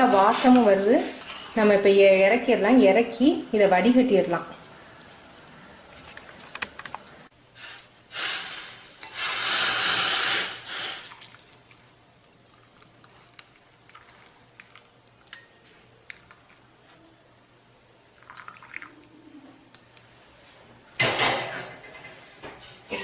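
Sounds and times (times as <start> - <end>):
dripping: 10.9 - 11.9
liquid pouring through a strainer: 18.2 - 18.9.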